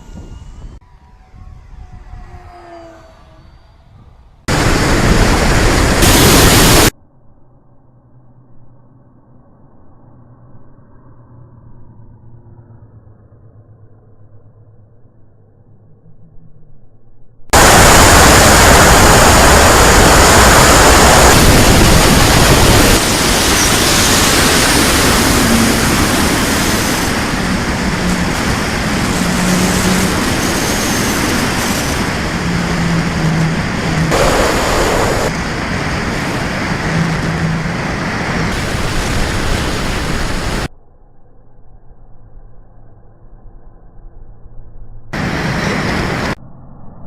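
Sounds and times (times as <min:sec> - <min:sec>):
wind rushing over microphone: 0:04.5 - 0:06.9, 0:17.6 - 0:40.7.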